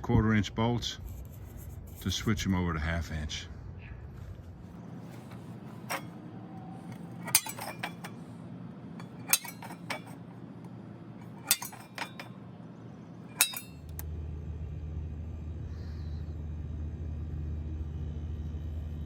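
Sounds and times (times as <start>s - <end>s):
low steady hum: 0.0s - 19.0s
metal-on-metal clinks: 5.8s - 6.1s, 6.9s - 8.2s, 9.0s - 10.2s, 11.2s - 12.4s, 13.3s - 14.0s.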